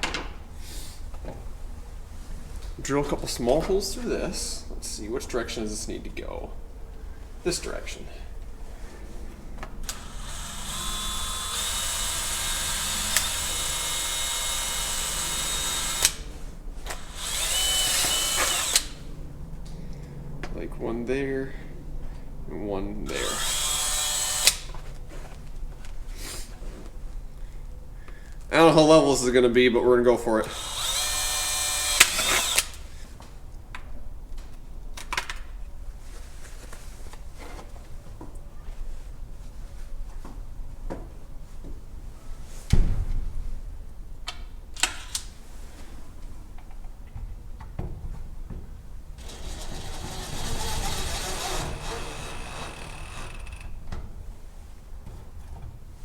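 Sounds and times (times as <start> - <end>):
power drill whining: 9.8 - 19.1, 23.1 - 24.7, 30.4 - 32.9, 49.2 - 53.9.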